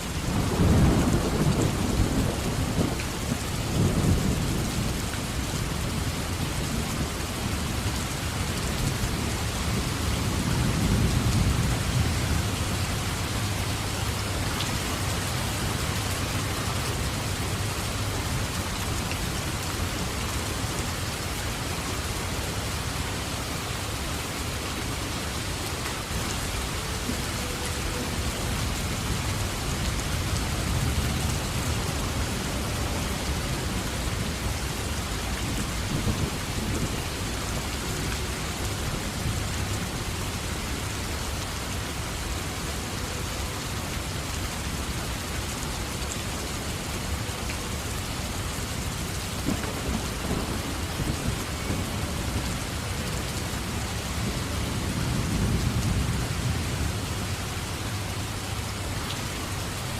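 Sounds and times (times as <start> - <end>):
steady rain falling: 0.0 - 59.9
low rolling thunder: 0.1 - 7.6, 9.1 - 17.3, 28.4 - 37.1, 48.8 - 52.8, 54.0 - 57.7.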